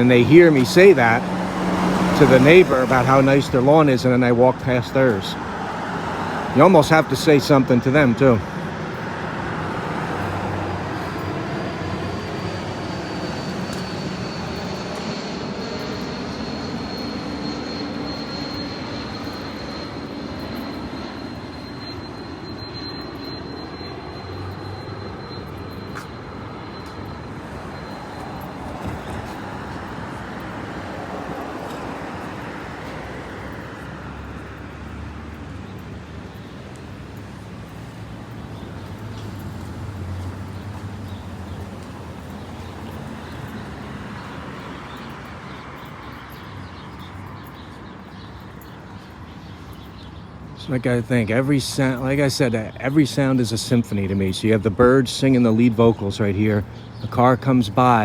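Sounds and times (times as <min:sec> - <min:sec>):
jet airliner engine roar: 0:00.0 - 0:35.4
high engine whine: 0:00.0 - 0:58.0.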